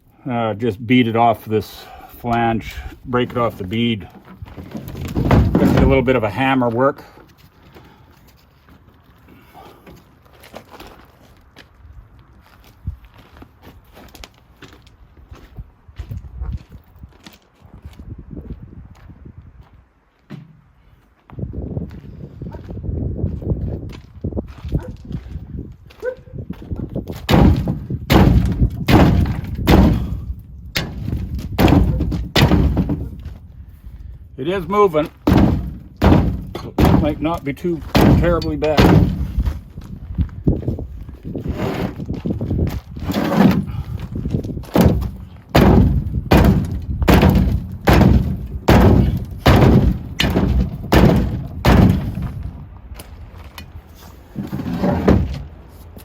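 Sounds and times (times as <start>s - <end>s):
sledgehammer striking steel rim: 27.3s - 30.2s, 30.8s - 33.2s, 35.3s - 37.3s, 37.9s - 39.5s, 44.8s - 52.4s.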